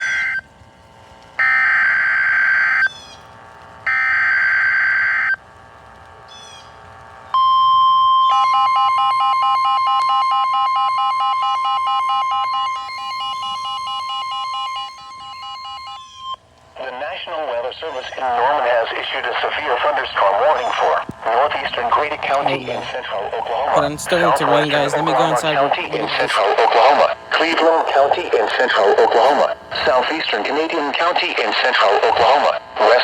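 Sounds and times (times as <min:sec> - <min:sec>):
rapidly pulsing alarm tone: 0:01.4 - 0:03.0, 0:03.8 - 0:05.4, 0:07.4 - 0:16.5
long steady alert tone: 0:07.4 - 0:16.4, 0:21.2 - 0:26.6.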